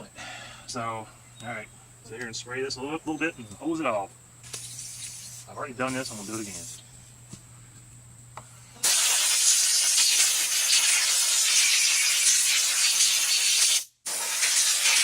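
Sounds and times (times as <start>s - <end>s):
aerosol spray hissing: 4.5s - 5.5s, 8.8s - 15.0s.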